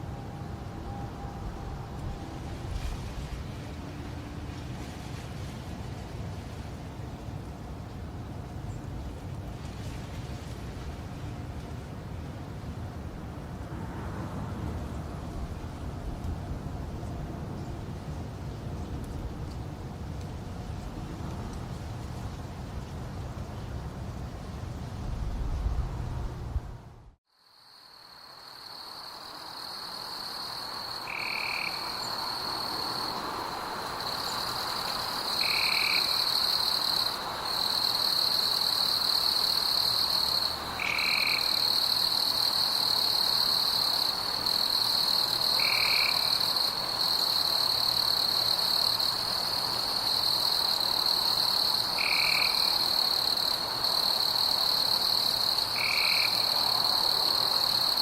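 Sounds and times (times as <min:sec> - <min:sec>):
frogs trilling: 0:28.1 - 0:58.0.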